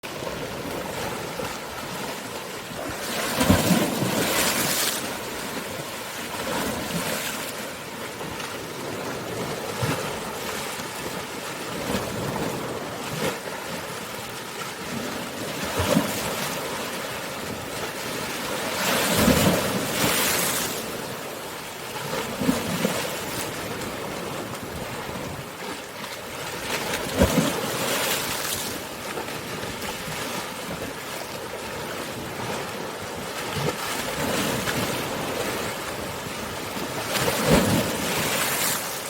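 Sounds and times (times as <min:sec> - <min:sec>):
waves washing over pebble beach: 0:00.1 - 0:21.4, 0:26.4 - 0:39.0.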